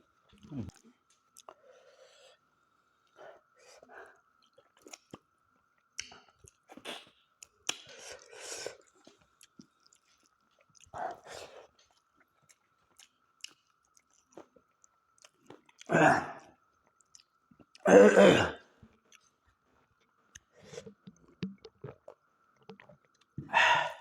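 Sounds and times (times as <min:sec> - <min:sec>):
person chewing and smacking: 0:04.3 - 0:15.9, 0:16.7 - 0:17.8, 0:19.0 - 0:23.4.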